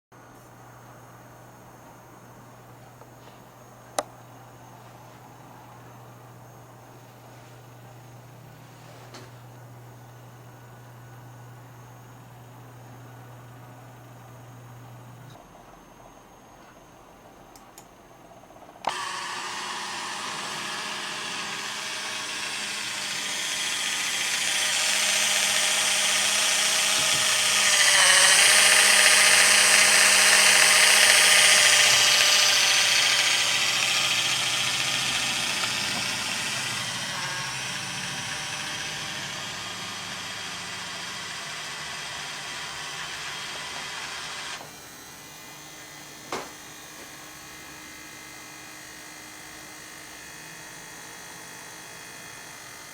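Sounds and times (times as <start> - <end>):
electric gear motors whirring: 18.8 - 46.5.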